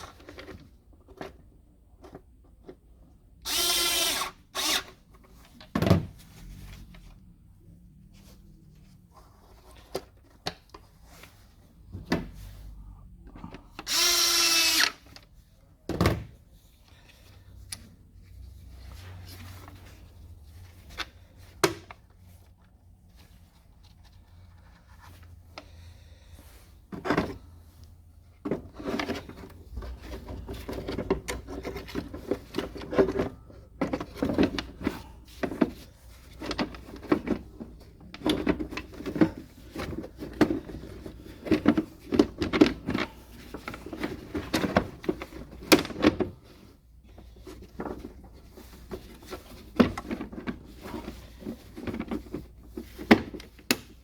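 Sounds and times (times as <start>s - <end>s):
hands clicking and knocking plastic: 53.0s - 54.0s.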